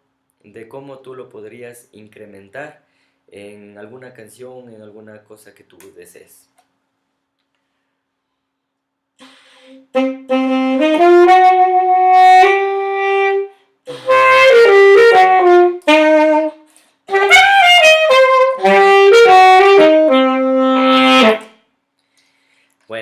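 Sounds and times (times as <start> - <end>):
alto saxophone melody with growl: 9.2 - 21.6.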